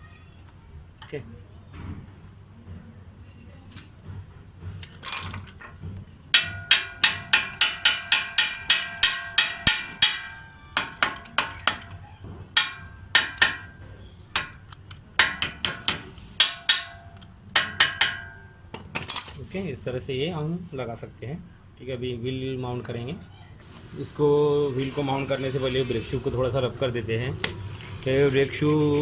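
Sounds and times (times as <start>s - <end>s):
hammer striking steel: 6.3s - 19.3s.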